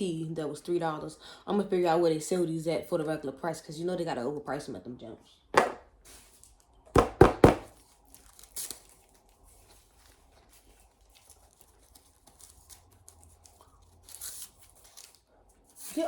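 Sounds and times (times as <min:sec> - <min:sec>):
plastic crinkling: 0:07.7 - 0:16.0.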